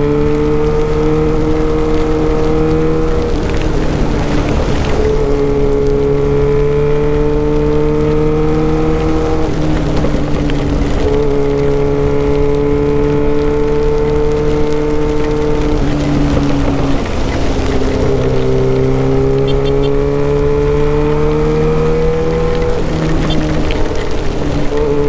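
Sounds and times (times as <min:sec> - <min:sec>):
motorcycle engine revving: 0:00.0 - 0:25.0
wind and rain hiss: 0:00.0 - 0:25.0.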